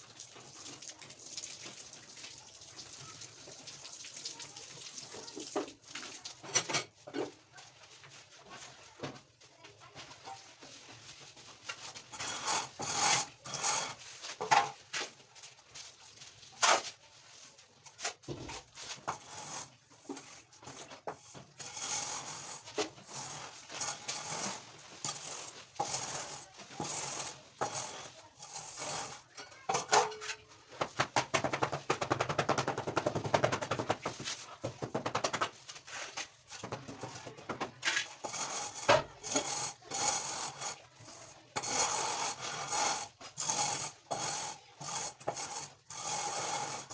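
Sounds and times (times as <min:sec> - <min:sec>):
rasping on wood: 0:41.6 - 0:46.9.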